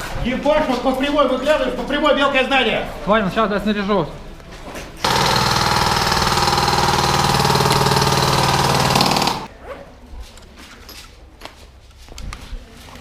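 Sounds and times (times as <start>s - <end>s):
airsoft gun full-auto burst: 5.0s - 9.5s.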